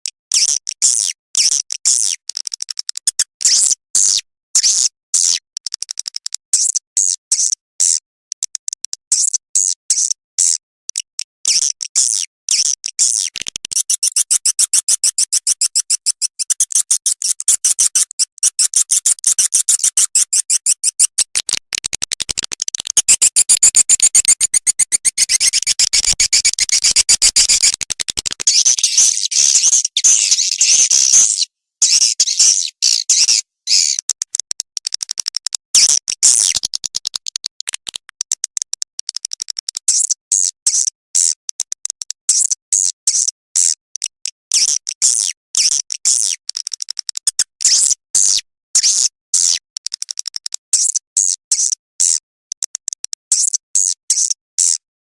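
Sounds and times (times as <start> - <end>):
swiftlet chattering twitter: 13.8 - 21.4, 23.0 - 27.8, 28.4 - 34.1.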